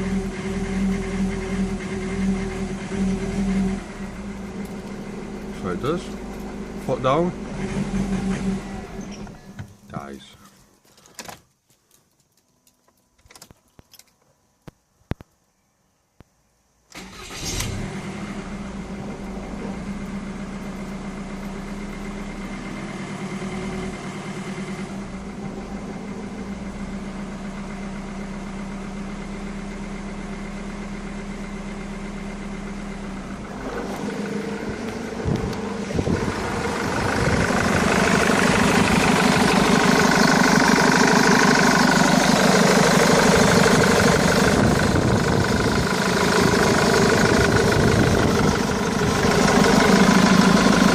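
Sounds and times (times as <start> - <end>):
engine revving: 0.0 - 9.4, 17.0 - 28.2, 31.8 - 50.9
car engine starting and idling: 0.0 - 10.2, 16.9 - 50.9.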